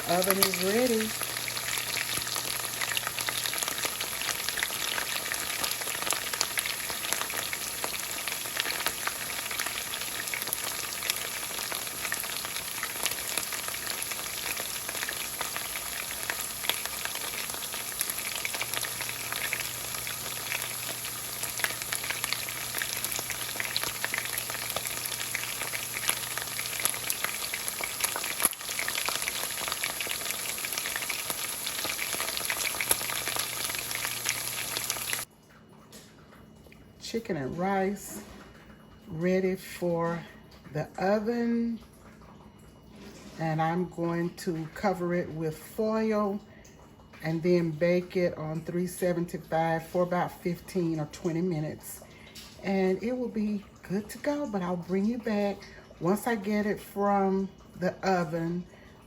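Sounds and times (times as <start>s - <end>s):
chicken sizzling in a skillet: 0.0s - 35.3s.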